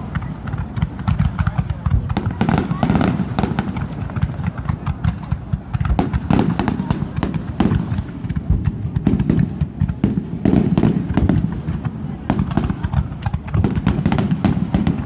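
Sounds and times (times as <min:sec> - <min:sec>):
fireworks cracking and popping: 0:00.0 - 0:15.0.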